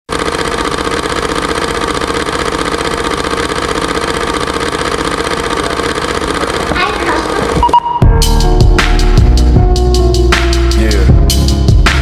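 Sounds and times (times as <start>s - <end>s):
pulsing engine drone: 0.1s - 12.0s.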